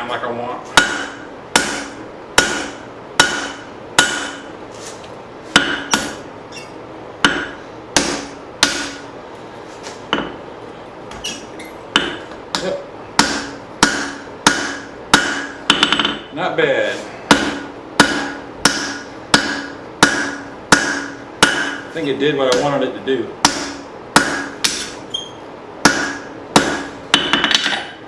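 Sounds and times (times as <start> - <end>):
hammer striking steel on anvil: 0.8 - 4.5, 5.6 - 6.2, 7.2 - 9.1, 11.9 - 16.3, 17.3 - 21.9, 22.5 - 22.8, 23.4 - 25.0, 25.8 - 27.9.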